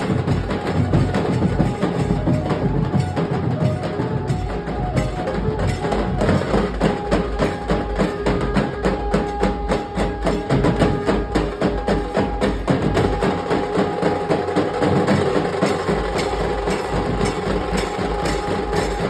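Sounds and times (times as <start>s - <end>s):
fast heavy drumming: 0.0s - 19.0s.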